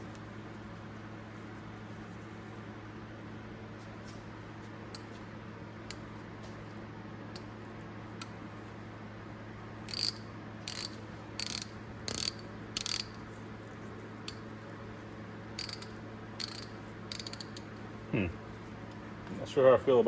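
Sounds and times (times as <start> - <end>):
hand ratchet clicking: 9.9 - 13.2, 15.6 - 17.6.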